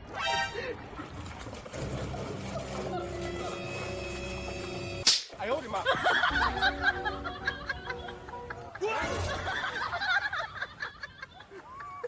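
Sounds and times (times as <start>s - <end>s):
background music: 1.6s - 11.1s
laughter: 5.7s - 12.0s.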